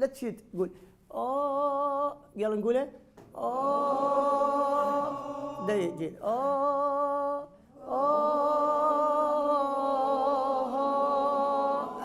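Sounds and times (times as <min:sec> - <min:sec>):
breath: 0:00.7 - 0:01.1.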